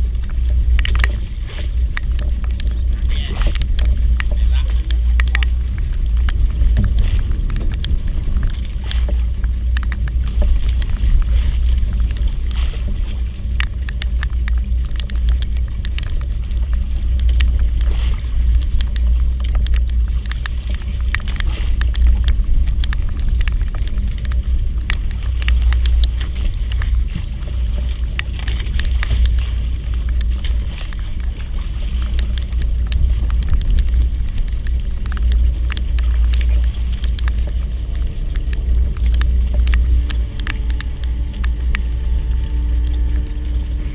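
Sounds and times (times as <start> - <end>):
boat engine running: 0.0 - 43.9
ticks and crackles: 0.0 - 43.9
wind on microphone: 0.0 - 43.9.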